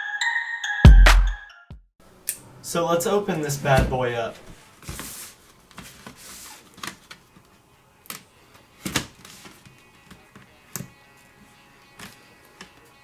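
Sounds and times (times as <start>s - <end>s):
cardboard box scrapes and knocks: 4.6s - 6.6s.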